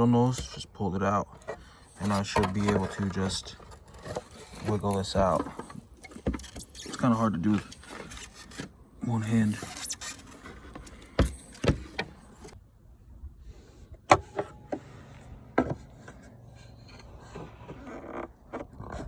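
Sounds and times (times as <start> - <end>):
plastic parts clicking and knocking: 9.6 - 12.6.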